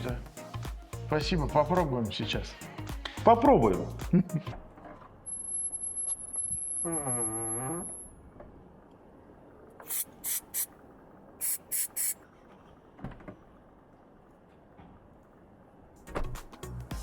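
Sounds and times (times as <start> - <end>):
aerosol spray squirts: 9.8 - 10.7, 11.4 - 12.2.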